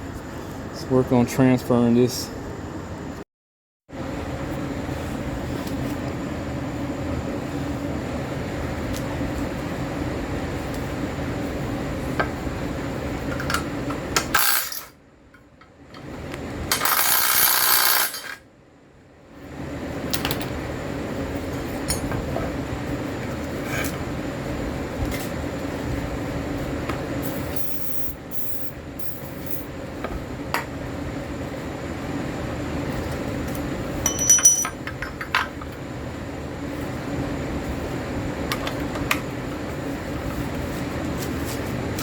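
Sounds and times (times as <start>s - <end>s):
steady hum: 0.0s - 3.2s
metal tools clinking: 34.0s - 34.9s.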